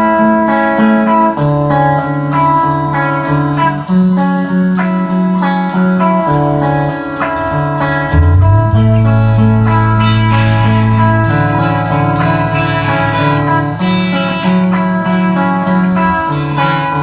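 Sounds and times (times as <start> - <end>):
plucked guitar notes: 6.8 - 16.8
bass line: 7.4 - 14.4.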